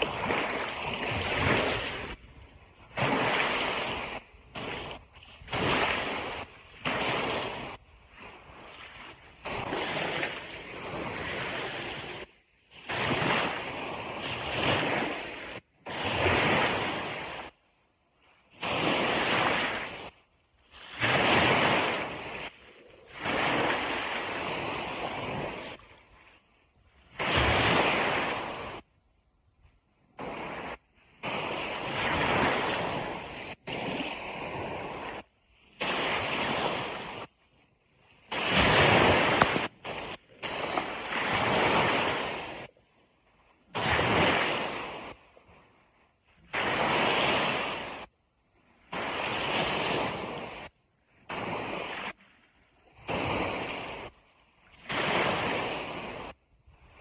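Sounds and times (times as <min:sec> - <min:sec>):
ocean surf washing on beach: 0:00.0 - 0:57.0.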